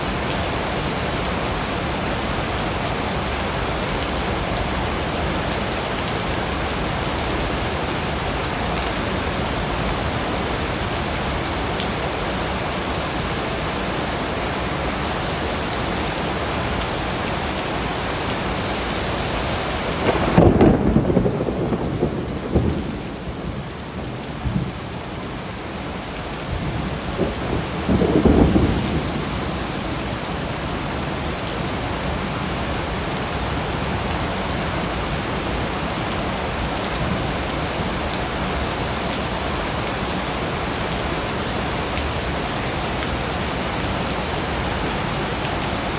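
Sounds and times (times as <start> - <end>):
steady rain hissing: 0.0 - 45.9
thunder rumbling: 19.2 - 35.2.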